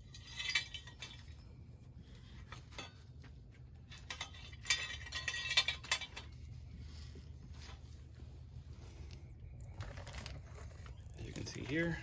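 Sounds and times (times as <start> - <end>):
metal parts clinking: 3.9 - 6.4.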